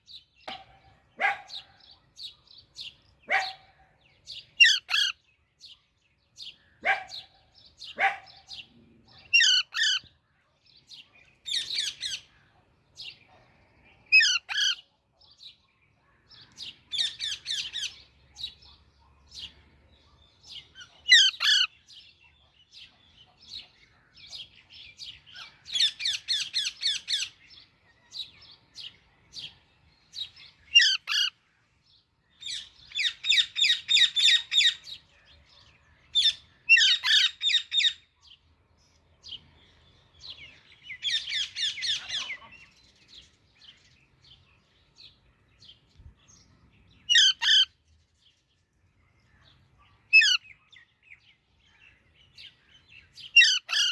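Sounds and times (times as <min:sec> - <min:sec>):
parakeet squawking: 0:21.1 - 0:21.7, 0:36.7 - 0:37.9, 0:47.1 - 0:47.7, 0:53.4 - 0:53.9.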